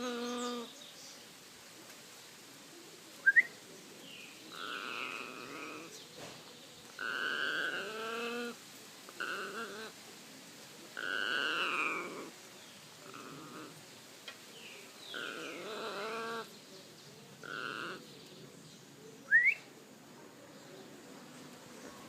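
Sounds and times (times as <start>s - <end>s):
macaw growling calls: 0.0s - 0.7s, 4.4s - 6.0s, 7.0s - 10.0s, 10.9s - 12.4s, 13.0s - 13.8s, 15.1s - 16.5s, 17.4s - 18.1s.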